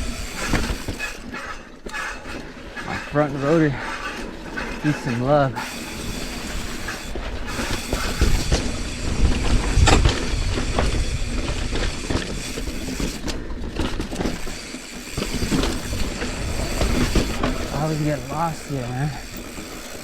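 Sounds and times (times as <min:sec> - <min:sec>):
bike parts rattling: 0:00.0 - 0:20.0
tyres on dirt: 0:00.0 - 0:20.0
wind rumbling on microphone: 0:06.2 - 0:14.2.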